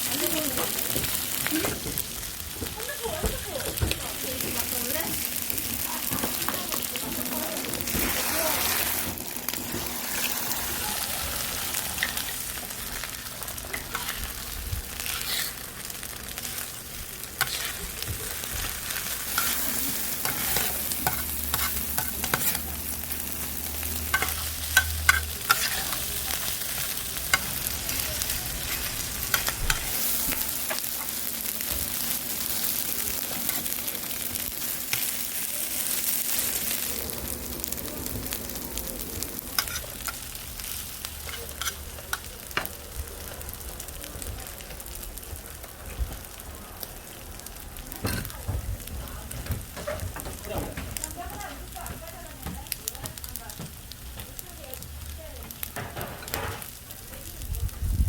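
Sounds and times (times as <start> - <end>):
food sizzling on a hot griddle: 0.0 - 58.0
clicks and scrapes of stirring: 13.7 - 14.2, 17.4 - 19.6, 24.1 - 26.0.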